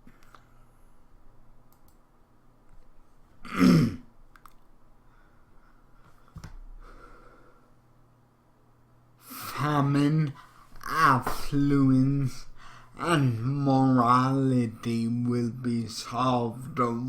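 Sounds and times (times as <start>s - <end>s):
faint clicks: 1.7s - 2.0s
person clearing throat: 3.4s - 4.1s.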